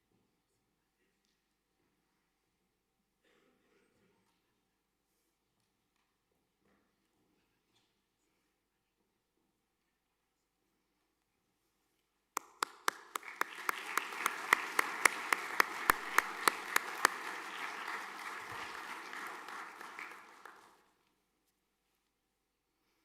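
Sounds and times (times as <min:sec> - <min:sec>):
audience applauding: 0:12.4 - 0:20.9
sharp regular claps close by: 0:12.4 - 0:20.9.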